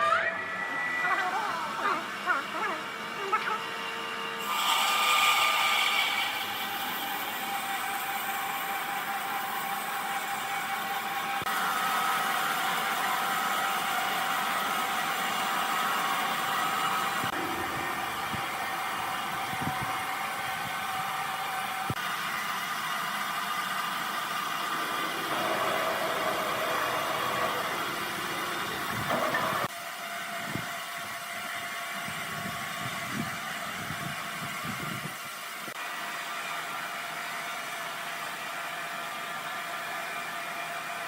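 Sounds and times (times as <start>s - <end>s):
woodworking machine motor hum: 1.3s - 29.7s.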